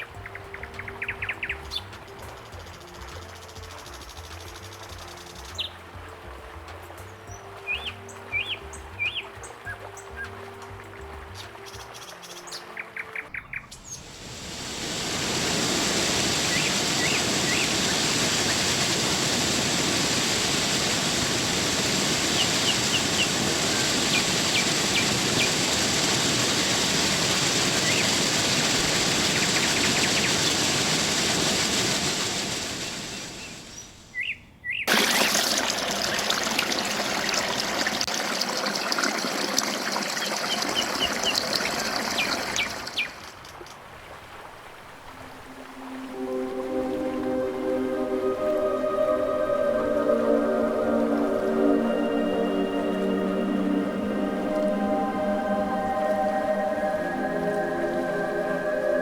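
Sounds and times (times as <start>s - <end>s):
small birds chirping: 0.0s - 5.8s, 7.2s - 10.4s, 16.4s - 18.8s, 22.2s - 25.8s, 27.7s - 28.5s, 32.8s - 34.9s
waterfall rushing: 13.8s - 33.8s, 34.9s - 43.6s, 44.5s - 59.0s.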